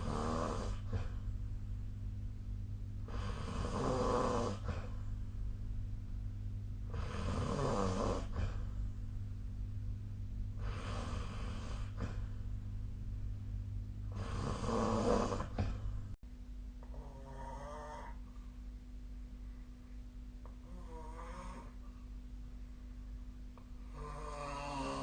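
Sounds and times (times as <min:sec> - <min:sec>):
person snoring: 0:00.0 - 0:01.2, 0:03.0 - 0:05.0, 0:06.9 - 0:08.8, 0:10.6 - 0:12.4, 0:14.1 - 0:15.9, 0:20.7 - 0:21.8, 0:23.8 - 0:25.0
steady low hum: 0:00.0 - 0:25.0.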